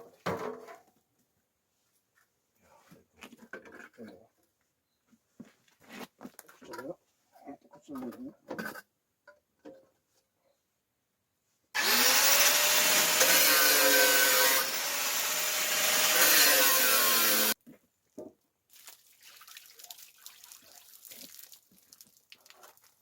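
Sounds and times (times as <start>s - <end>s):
electric power tool motor: 11.8s - 17.6s.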